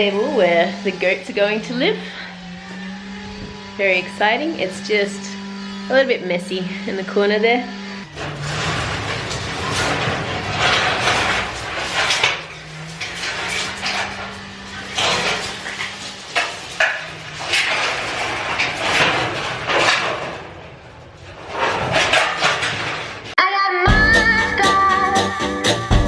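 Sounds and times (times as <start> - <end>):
hard objects knocking and scraping: 8.1 - 23.4.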